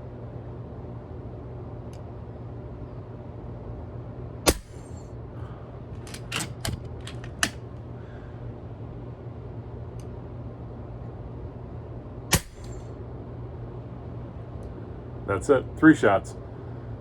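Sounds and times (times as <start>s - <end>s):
air rifle firing: 4.5s - 5.0s, 12.3s - 12.8s.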